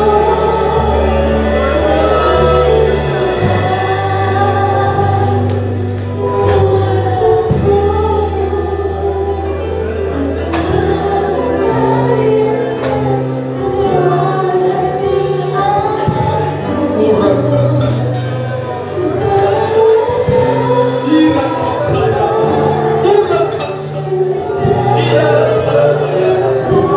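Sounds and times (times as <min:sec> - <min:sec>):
group of voices singing: 0:00.0 - 0:26.9
instrumental accompaniment: 0:00.0 - 0:26.9.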